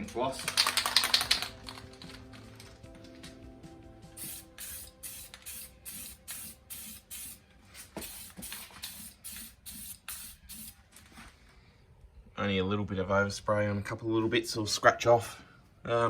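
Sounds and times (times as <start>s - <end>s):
aerosol can spraying: 4.1s - 10.8s.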